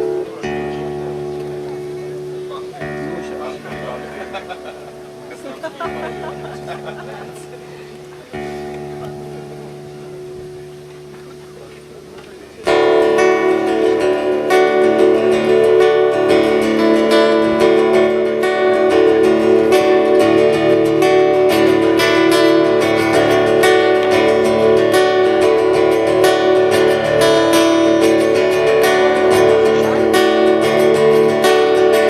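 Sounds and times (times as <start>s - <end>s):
acoustic guitar strumming: 0.0s - 32.0s.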